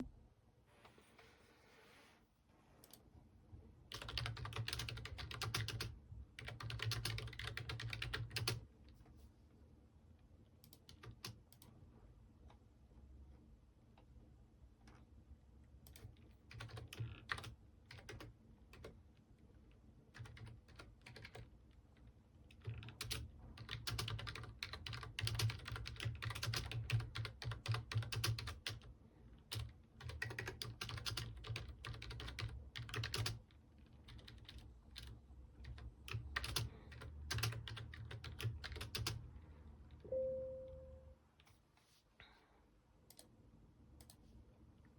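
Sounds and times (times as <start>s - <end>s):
computer keyboard typing: 3.9s - 8.7s, 10.6s - 11.7s, 15.9s - 19.0s, 20.1s - 21.5s, 22.5s - 28.9s, 29.5s - 39.3s
brief steady tone: 40.0s - 41.2s.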